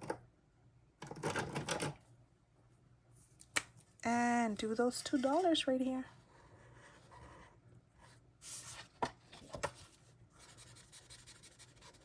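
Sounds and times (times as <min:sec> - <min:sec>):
banknotes rustling and scraping: 0:04.6 - 0:07.5.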